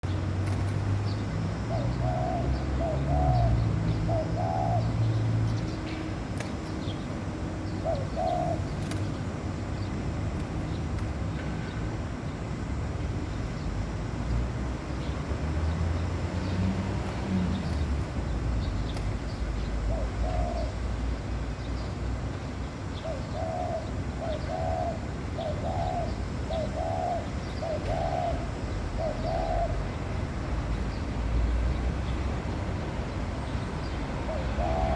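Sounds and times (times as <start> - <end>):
small birds chirping: 0.0 - 12.5, 13.2 - 34.9
doves cooing: 1.5 - 9.6, 19.1 - 21.2, 22.9 - 30.3, 34.1 - 34.9.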